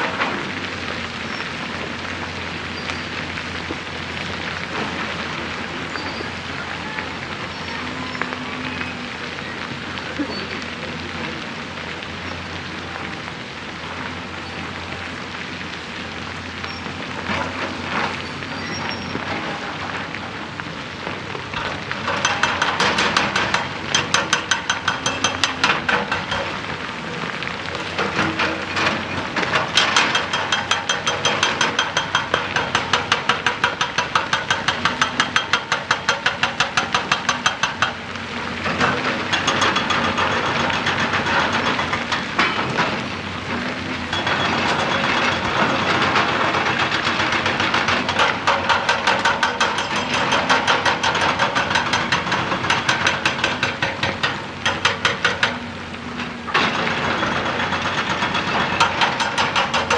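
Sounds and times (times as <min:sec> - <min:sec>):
diesel engine running: 0:00.0 - 0:59.9
hydraulic breaker hammering rock: 0:17.2 - 0:27.0, 0:27.7 - 0:59.9.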